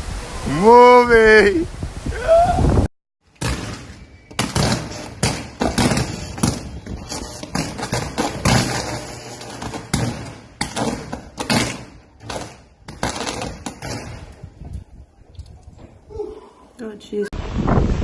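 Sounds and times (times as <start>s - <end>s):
wind buffeting microphone: 1.5s - 2.9s, 14.1s - 16.2s, 17.4s - 18.0s.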